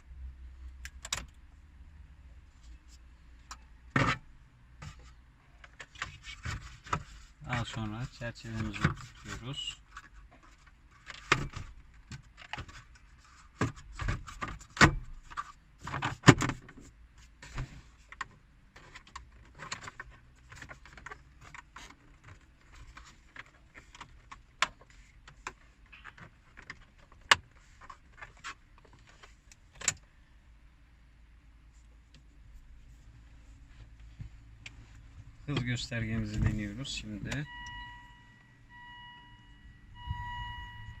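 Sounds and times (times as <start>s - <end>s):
plastic dashboard parts clicking: 4.8s - 30.1s, 35.4s - 41.0s.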